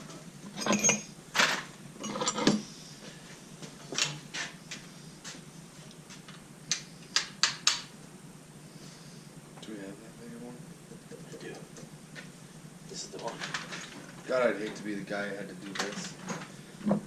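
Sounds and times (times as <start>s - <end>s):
metal tools clinking: 0.5s - 2.6s.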